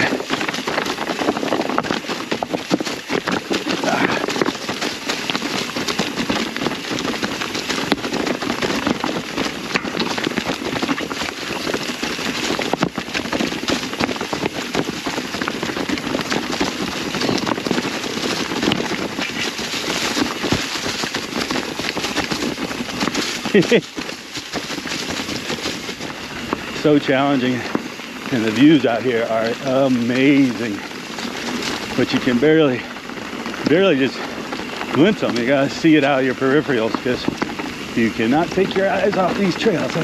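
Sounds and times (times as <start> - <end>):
bike tyres crunching leaves: 0.0 - 40.0.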